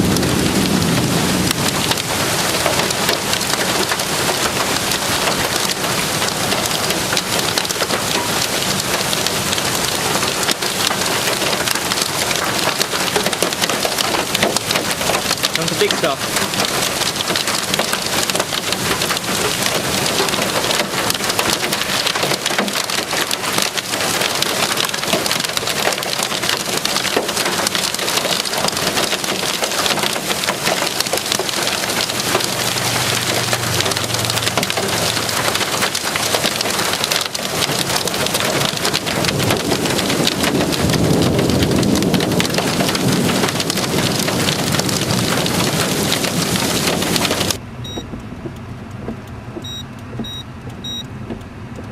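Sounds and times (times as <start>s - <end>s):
hail and rain pelting a car: 0.0s - 47.6s.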